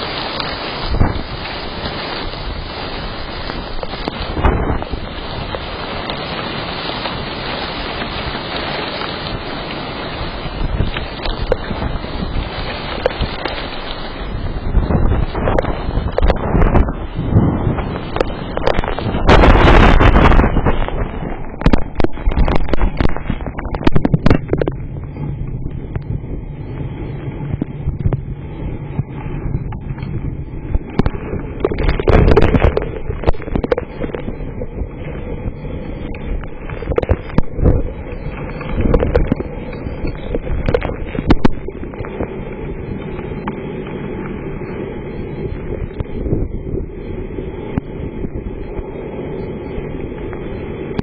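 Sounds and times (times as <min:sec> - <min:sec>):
hailstones knocking: 0:00.0 - 0:26.1, 0:30.7 - 0:43.9
storm wind buffeting microphone: 0:00.0 - 0:51.0.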